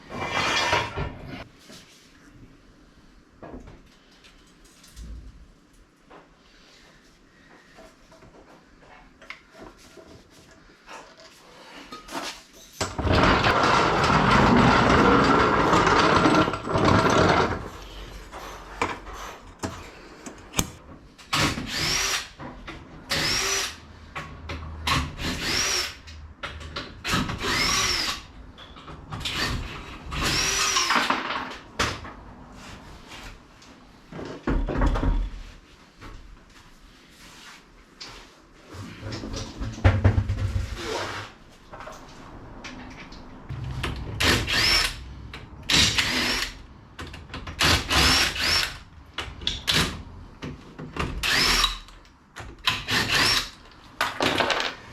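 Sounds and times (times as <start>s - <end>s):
power drill spinning: 12.9s - 18.6s, 21.6s - 22.3s, 23.1s - 23.8s, 25.2s - 26.0s, 27.1s - 28.3s, 29.2s - 31.1s, 44.2s - 45.1s, 45.7s - 46.7s, 47.6s - 48.8s, 51.2s - 51.9s, 52.6s - 53.6s.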